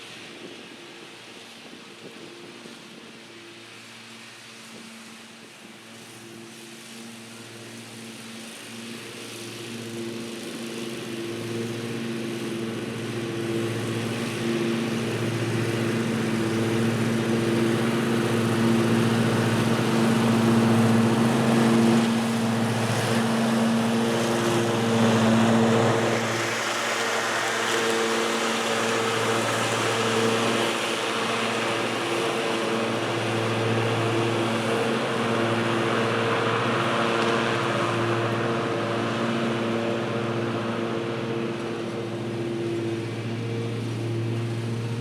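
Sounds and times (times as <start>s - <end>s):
lawn tractor mowing: 0.0s - 45.0s.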